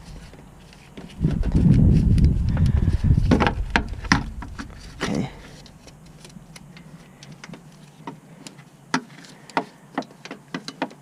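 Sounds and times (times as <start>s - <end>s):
hand tools clicking and tapping: 2.1s - 11.0s.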